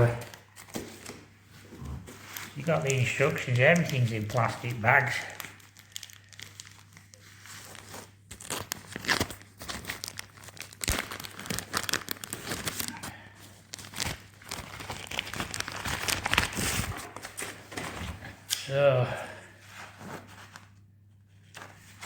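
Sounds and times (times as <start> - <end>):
plastic bags crinkling: 2.2 - 18.0.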